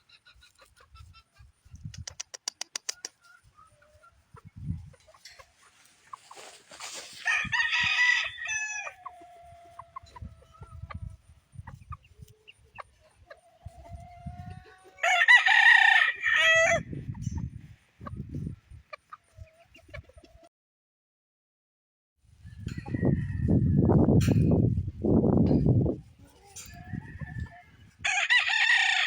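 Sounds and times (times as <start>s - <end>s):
small clicks: 1.8s - 3.2s
rooster crowing: 7.2s - 9.9s, 14.9s - 16.9s, 26.8s - 29.0s.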